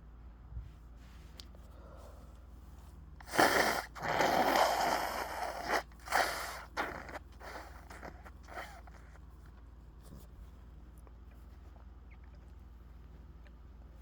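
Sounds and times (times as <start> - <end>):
person sneezing: 3.2 - 8.8
bursts of breath: 3.2 - 8.9.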